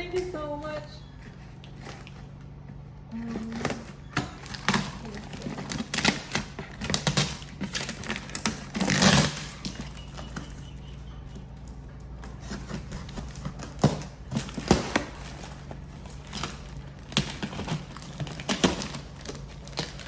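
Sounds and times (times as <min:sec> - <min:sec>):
cardboard tearing: 0:03.1 - 0:10.1, 0:12.2 - 0:20.0.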